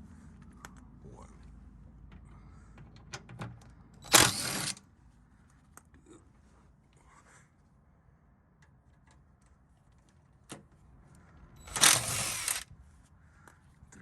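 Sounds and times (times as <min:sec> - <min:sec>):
cordless drill whirring: 0:04.1 - 0:04.8, 0:11.7 - 0:12.6
tools clicking: 0:11.7 - 0:12.6.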